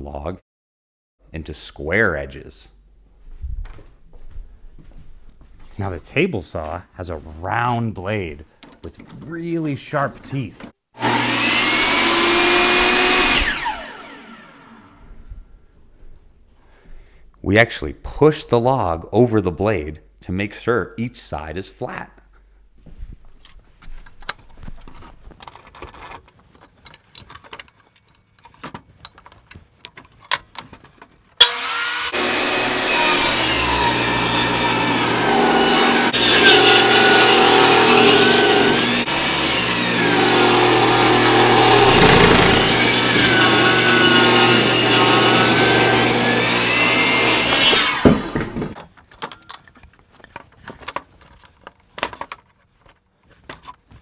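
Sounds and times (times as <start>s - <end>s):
table saw cutting wood: 11.0s - 15.0s, 31.4s - 48.8s
wood knocking: 47.9s - 48.8s.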